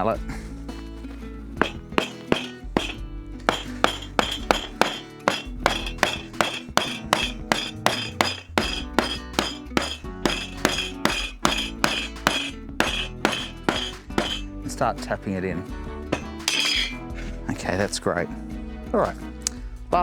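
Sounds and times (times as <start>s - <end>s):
music with clinking beat: 1.6s - 15.0s, 15.7s - 17.5s.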